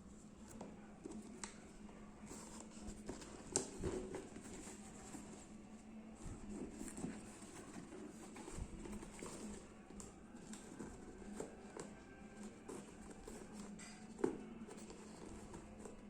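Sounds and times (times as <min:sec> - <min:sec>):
hands handling shoes and packaging: 0:00.2 - 0:16.0.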